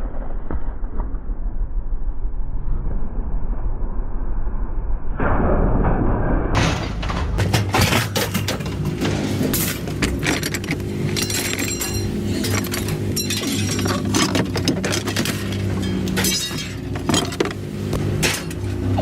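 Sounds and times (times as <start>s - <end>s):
engine rumbling: 6.4s - 19.0s
scrap metal clanking onto pile: 6.6s - 18.8s.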